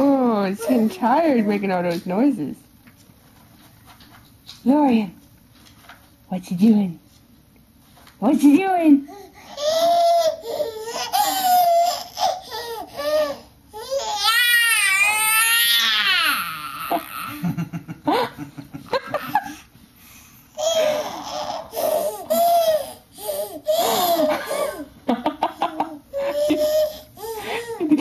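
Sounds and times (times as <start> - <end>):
baby laughing: 9.6 - 14.3, 20.6 - 28.0.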